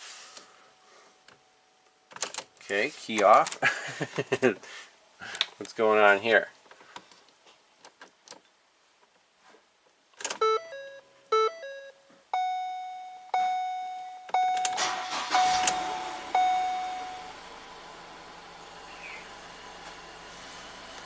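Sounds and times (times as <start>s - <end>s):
dashboard warning chimes: 10.4s - 17.4s
car engine cranking and starting: 14.4s - 21.0s.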